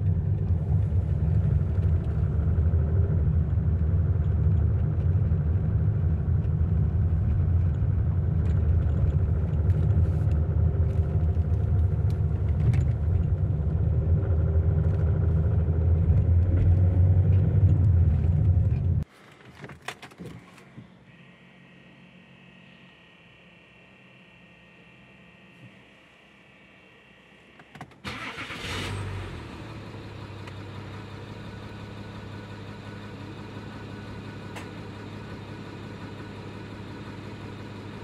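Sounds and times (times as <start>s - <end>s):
faint steady hum: 20.4s - 27.6s
diesel engine idling: 28.1s - 38.0s.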